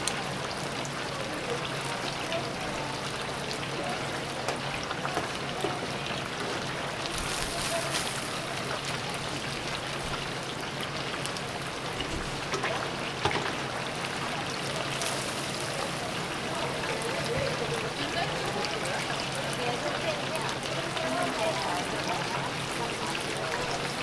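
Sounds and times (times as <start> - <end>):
chicken sizzling in hot oil: 0.0 - 24.0.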